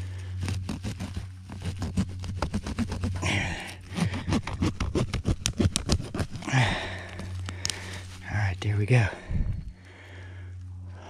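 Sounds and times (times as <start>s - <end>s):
hand tool chopping tree root: 0.4s - 7.9s.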